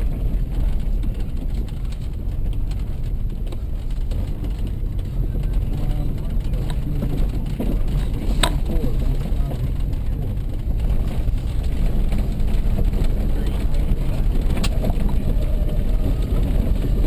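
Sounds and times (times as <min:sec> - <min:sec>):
car engine rumbling: 0:00.0 - 0:17.0.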